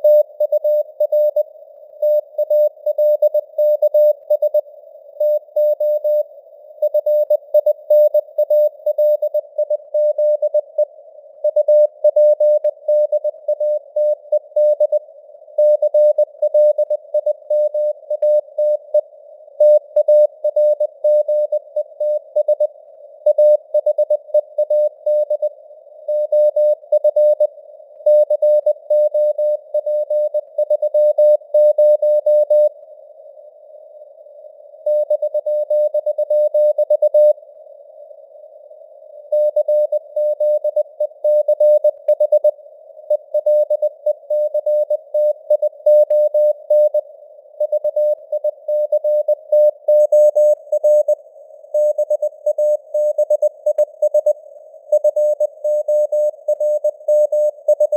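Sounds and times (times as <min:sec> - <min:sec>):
faint radio hiss: 0:32.7 - 0:34.8, 0:37.4 - 0:39.3, 0:46.6 - 0:48.7.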